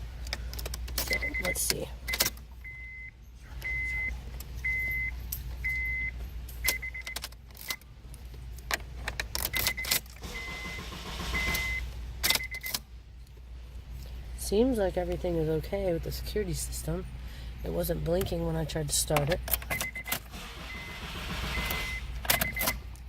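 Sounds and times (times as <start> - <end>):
ignition key jangling and clicking: 0.2 - 14.0, 18.1 - 23.0
car warning chime beeping: 1.1 - 7.2, 9.5 - 12.8, 19.7 - 22.8.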